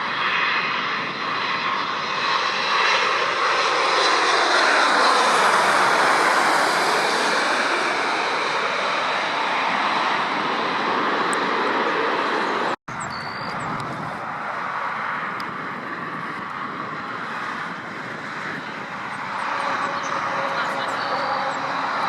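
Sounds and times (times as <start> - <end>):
jet engines roaring: 0.0 - 22.0.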